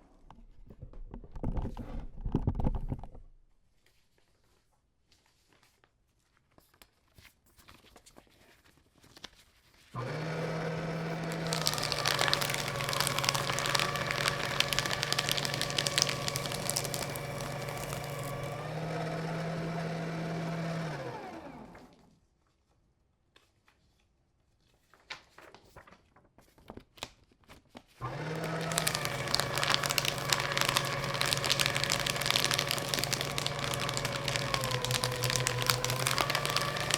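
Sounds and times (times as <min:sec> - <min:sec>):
paper crunching in shredder: 0:10.0 - 0:22.0, 0:28.0 - 0:36.9
paper shredder motor: 0:10.0 - 0:22.1, 0:28.0 - 0:36.9
rustling and clicks: 0:11.2 - 0:18.6, 0:28.4 - 0:36.9.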